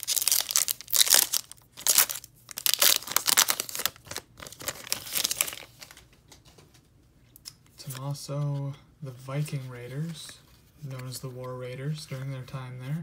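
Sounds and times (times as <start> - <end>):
foil wrapper crinkling and tearing: 0.0 - 6.0.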